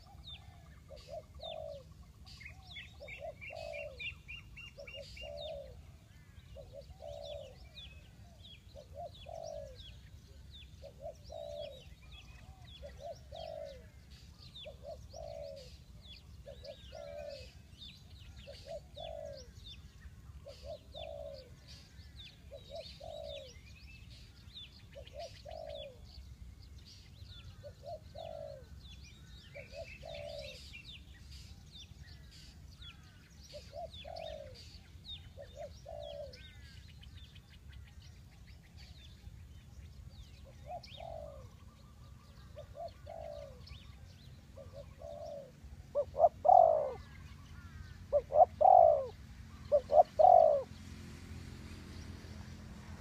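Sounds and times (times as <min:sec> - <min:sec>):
dove cooing: 0:00.0 - 0:19.8, 0:20.4 - 0:23.6, 0:24.9 - 0:26.2, 0:27.3 - 0:37.3, 0:40.3 - 0:50.8
small birds chirping: 0:00.0 - 0:53.0.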